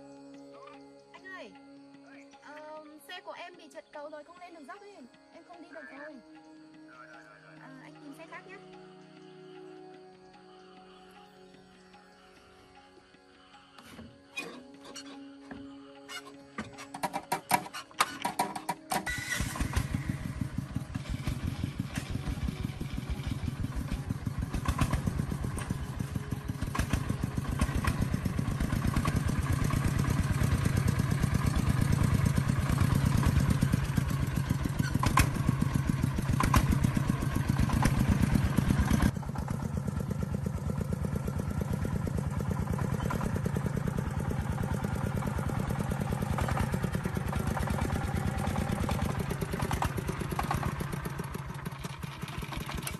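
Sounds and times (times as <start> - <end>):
diesel engine chugging: 16.1 - 52.9.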